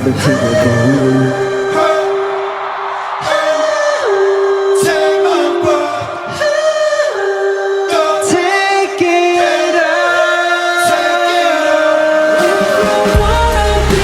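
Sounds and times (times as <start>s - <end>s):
pop vocals singing in harmony: 0.0s - 14.0s.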